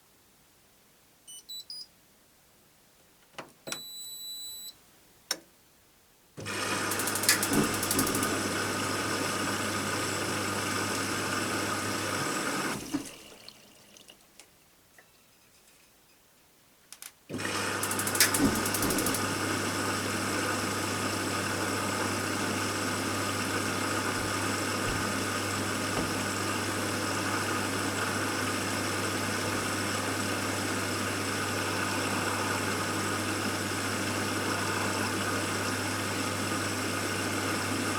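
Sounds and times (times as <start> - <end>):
control panel beeps: 1.3 - 1.9, 3.7 - 4.8
washing machine hum and rush: 6.4 - 13.2, 17.4 - 37.9.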